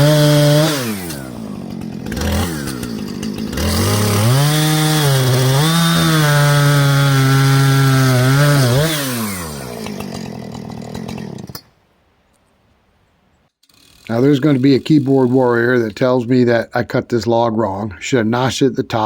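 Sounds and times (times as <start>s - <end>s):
chainsaw cutting log: 0.0s - 11.7s, 13.6s - 16.0s.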